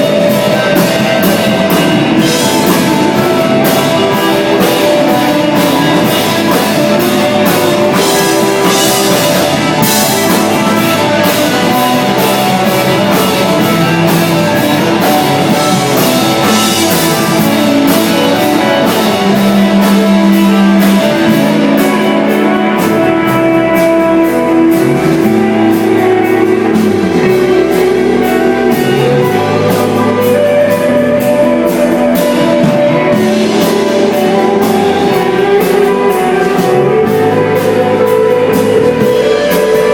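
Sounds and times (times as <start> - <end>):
bass guitars: 0.0 - 39.9
drum kit beat: 0.0 - 39.9
electric guitar: 0.0 - 39.9.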